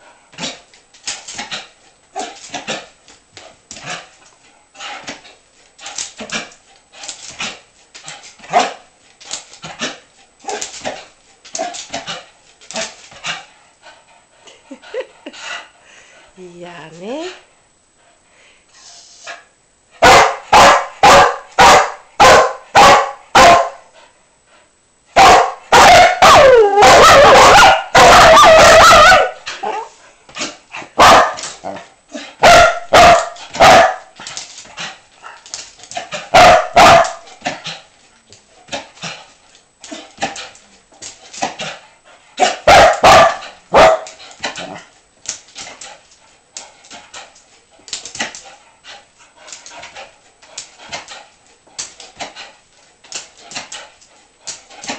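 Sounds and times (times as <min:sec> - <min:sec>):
dog barking: 0:08.5 - 0:08.8, 0:20.0 - 0:23.9, 0:25.2 - 0:29.9, 0:31.0 - 0:31.5, 0:32.4 - 0:34.1, 0:36.3 - 0:37.3, 0:42.4 - 0:44.2.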